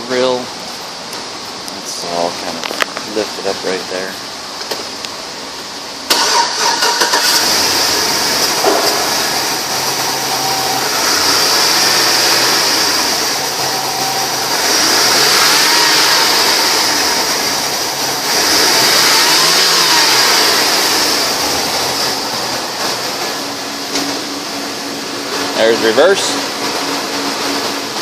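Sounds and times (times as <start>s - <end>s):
car engine revving and idling: 5.6s - 28.0s.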